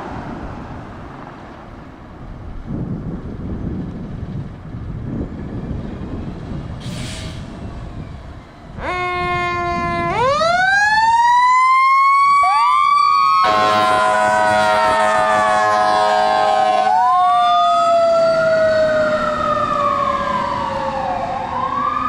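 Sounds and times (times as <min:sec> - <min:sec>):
fire engine rumbling: 0:00.0 - 0:22.0
short hiss: 0:06.8 - 0:07.6
air horn blast: 0:08.8 - 0:10.2, 0:13.4 - 0:17.0
faster siren sweep: 0:08.8 - 0:22.0.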